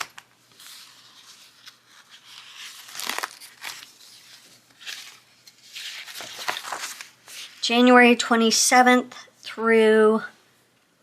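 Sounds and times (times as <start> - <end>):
paper pages rustling: 0.0 - 7.6.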